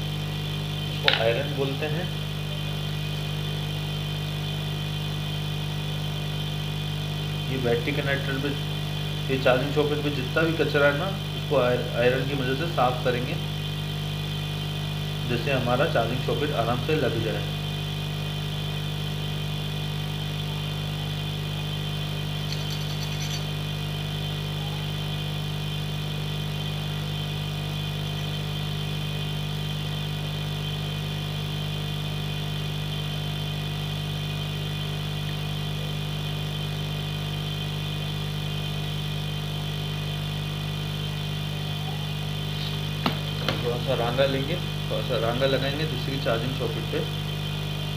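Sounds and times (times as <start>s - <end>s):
electrical machine hum: 0.0s - 47.9s.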